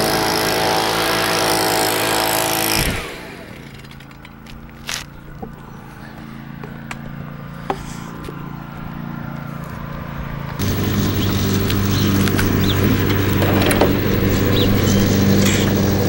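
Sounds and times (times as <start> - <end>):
lawn mower engine running: 0.0 - 16.0.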